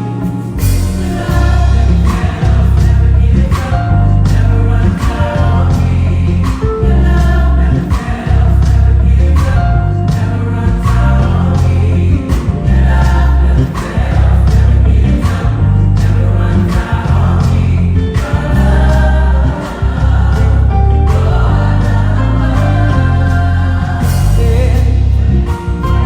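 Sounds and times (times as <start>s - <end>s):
electric bass: 0.0s - 26.0s
gospel choir singing: 0.0s - 26.0s
sharp percussive hits: 0.2s - 26.0s.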